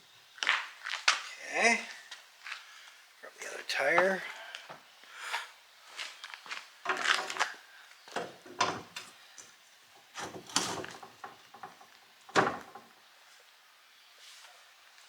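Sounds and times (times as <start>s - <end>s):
cart wheel clunking and clattering: 6.9s - 9.1s, 10.2s - 12.9s.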